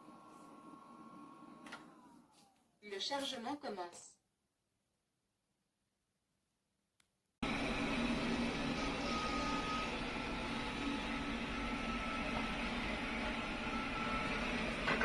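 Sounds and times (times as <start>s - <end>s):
robot vacuum fan and motors: 0.0s - 3.0s, 7.4s - 15.0s.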